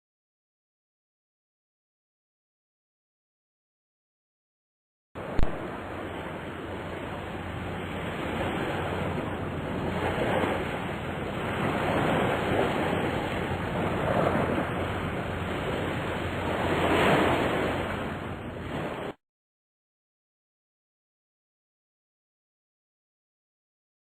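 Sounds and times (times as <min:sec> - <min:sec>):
steady rushing noise: 0:05.2 - 0:19.2.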